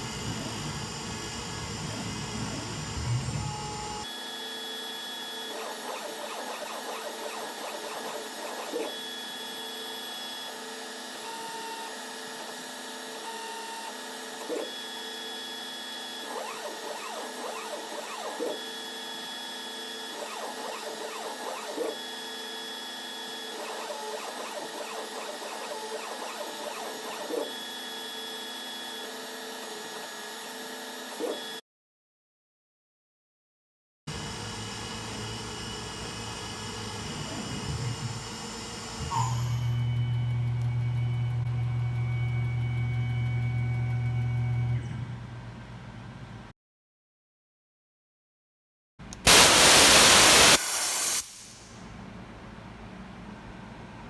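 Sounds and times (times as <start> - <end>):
stepper motors whining: 23.4 - 27.6.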